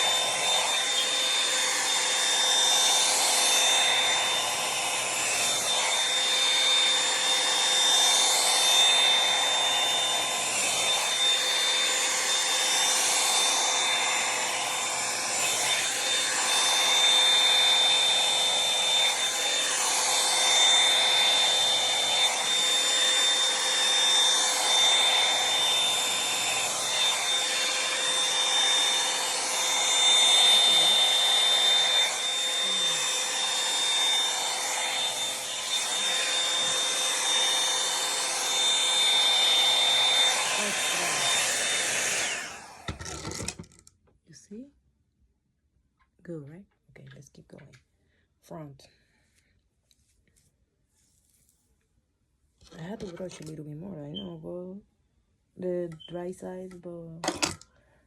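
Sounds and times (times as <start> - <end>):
hot-air brush dryer running: 0.0 - 43.8, 57.2 - 57.7.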